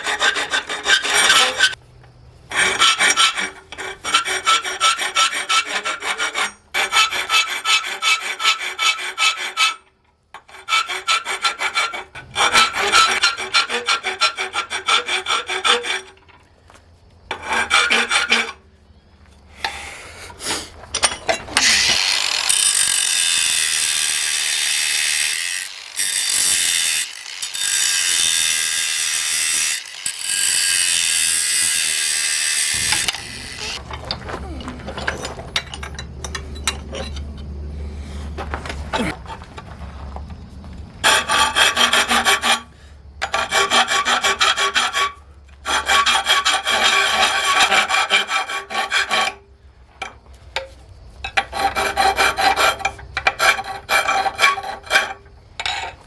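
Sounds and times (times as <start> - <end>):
hand file rasping on steel: 0.0 - 1.8, 2.5 - 16.3, 17.3 - 18.6, 21.6 - 33.8, 41.0 - 49.4, 51.3 - 56.0
power tool running: 21.6 - 33.8.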